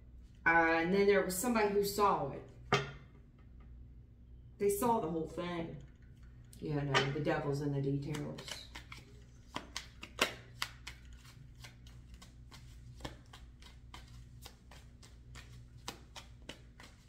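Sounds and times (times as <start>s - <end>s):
cards being shuffled: 8.0s - 17.0s.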